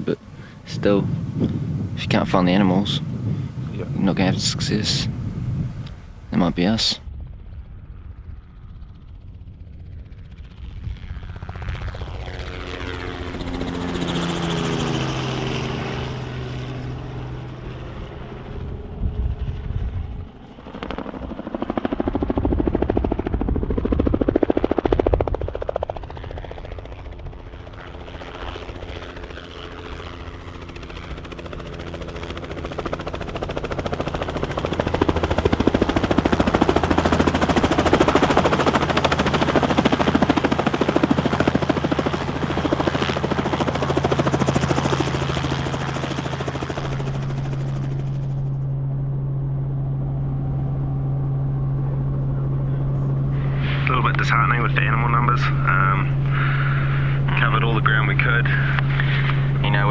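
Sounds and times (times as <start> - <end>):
helicopter rotor noise: 0.0 - 59.9
rising whine: 34.8 - 59.9.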